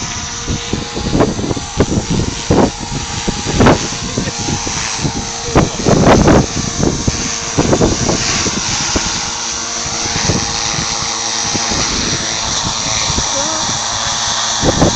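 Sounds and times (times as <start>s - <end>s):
rc helicopter whine: 0.0s - 14.9s
wind buffeting microphone: 0.0s - 14.9s.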